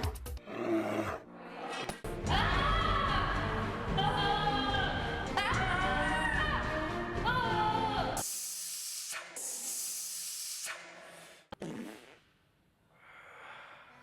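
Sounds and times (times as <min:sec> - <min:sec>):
person hissing forceful breaths: 0:08.2 - 0:11.5
quiet breathing: 0:12.8 - 0:14.0.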